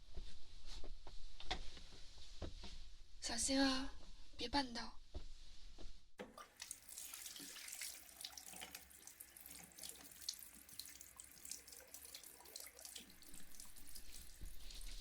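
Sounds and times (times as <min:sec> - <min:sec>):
tap water running into sink: 0:06.2 - 0:15.0.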